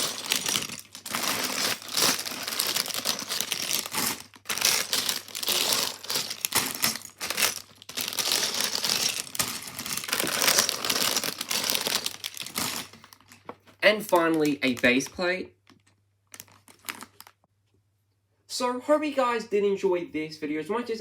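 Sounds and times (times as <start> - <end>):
plastic bags crinkling: 0.0 - 17.4
plastic pieces clattering: 0.0 - 17.4.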